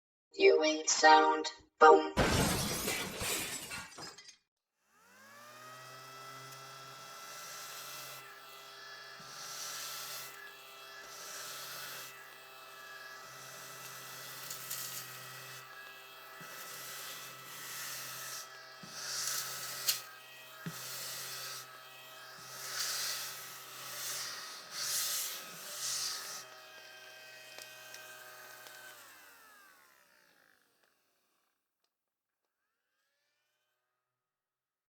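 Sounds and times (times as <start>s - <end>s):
handheld vacuum motor whining: 4.8s - 31.6s.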